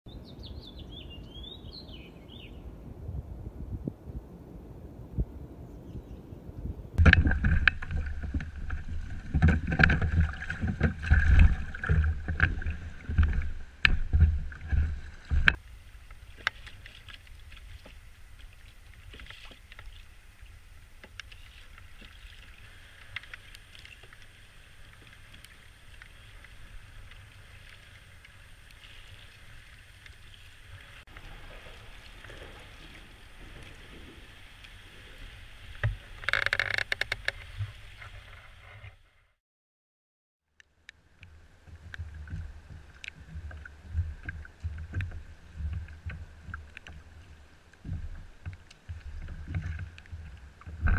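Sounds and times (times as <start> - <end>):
wind buffeting microphone: 0.2 - 15.6
water hiss: 14.5 - 36.6.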